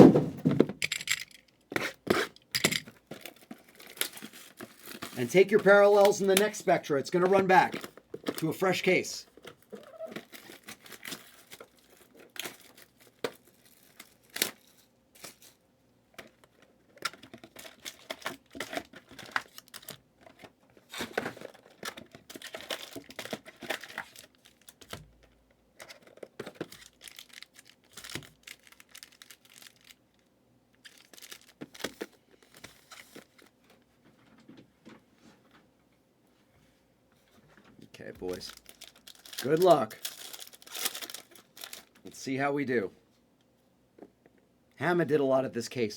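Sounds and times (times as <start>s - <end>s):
plastic wrapping crinkling: 3.0s - 15.5s, 16.3s - 33.6s, 38.2s - 42.2s.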